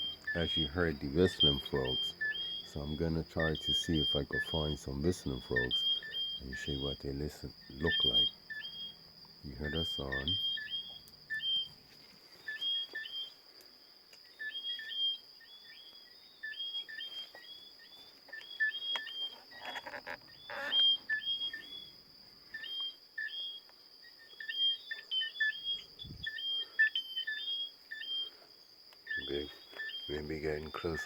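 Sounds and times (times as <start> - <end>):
whistling frogs calling: 0.0 - 11.7, 12.4 - 13.4, 14.2 - 31.0.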